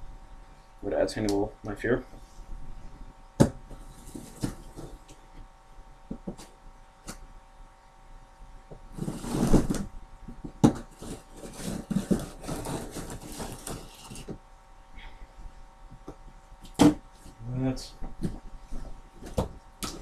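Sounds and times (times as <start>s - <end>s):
cardboard rustling and tapping: 3.4s - 5.2s, 9.3s - 14.4s, 18.0s - 20.0s.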